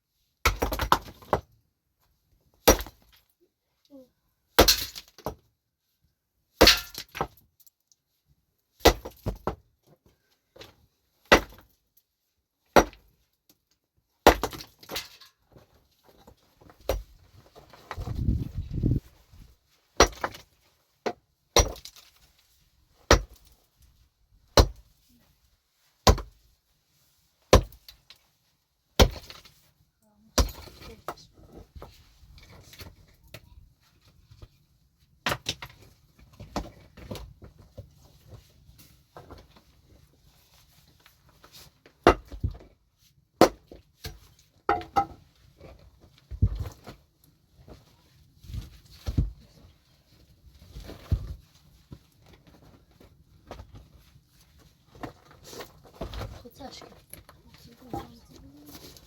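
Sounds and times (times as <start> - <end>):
hand tool striking hard material: 6.6 - 7.3, 20.0 - 22.0, 23.1 - 23.5, 24.5 - 24.9, 26.0 - 26.4, 27.5 - 28.0, 29.0 - 29.5.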